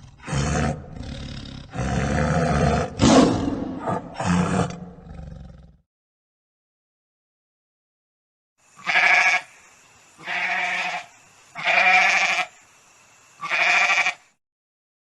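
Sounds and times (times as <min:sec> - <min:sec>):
animal bleating: 0:08.8 - 0:09.5, 0:10.2 - 0:12.5, 0:13.4 - 0:14.2.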